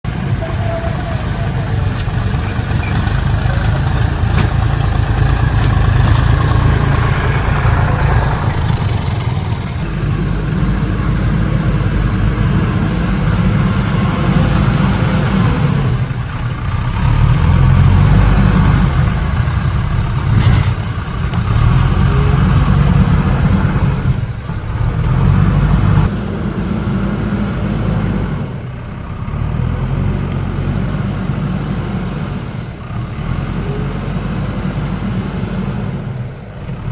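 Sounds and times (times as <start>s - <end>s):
diesel engines running: 0.0s - 36.9s.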